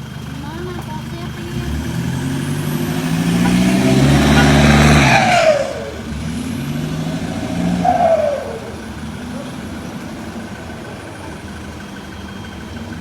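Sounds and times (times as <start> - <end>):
diesel engine revving: 0.0 - 13.0
falling turbo whistle: 3.7 - 6.2, 7.0 - 11.4.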